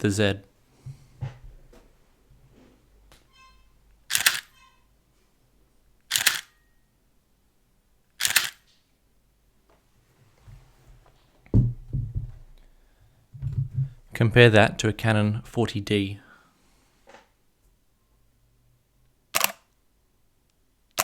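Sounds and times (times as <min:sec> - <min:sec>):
camera shutter clacking: 0:04.1 - 0:04.6, 0:06.1 - 0:06.6, 0:08.2 - 0:08.7, 0:19.4 - 0:19.6.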